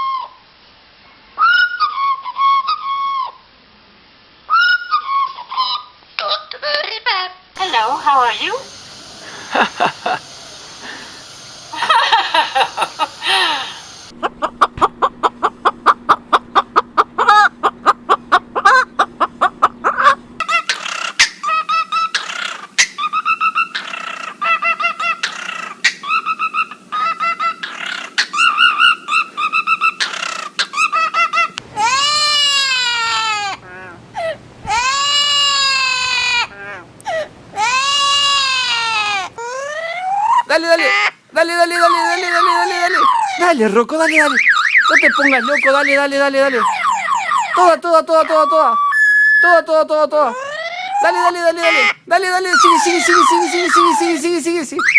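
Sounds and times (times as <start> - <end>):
parrot calling: 1.4 - 3.4, 4.5 - 6.0, 7.6 - 49.6, 50.2 - 54.9
steady low hum: 7.6 - 20.6, 23.2 - 48.1.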